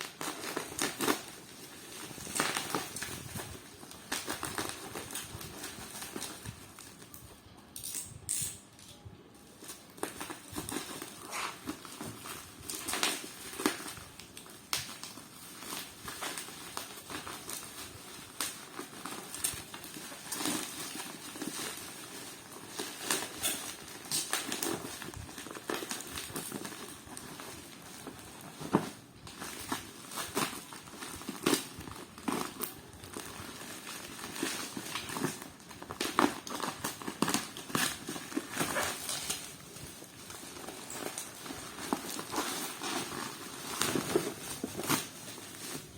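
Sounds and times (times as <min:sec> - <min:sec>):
plastic wrapping crinkling: 0:00.0 - 0:08.1, 0:08.7 - 0:45.9.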